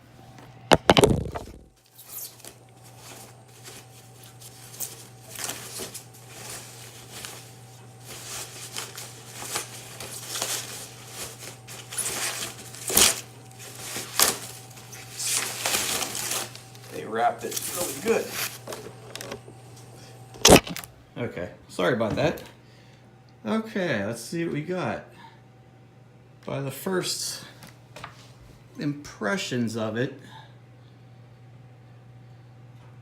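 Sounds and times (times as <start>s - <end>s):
styrofoam and plastic crinkling: 0.7s - 19.5s.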